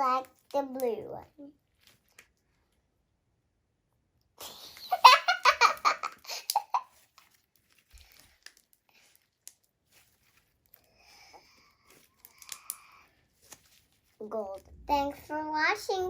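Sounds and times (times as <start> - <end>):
child giggling: 4.4 - 6.9.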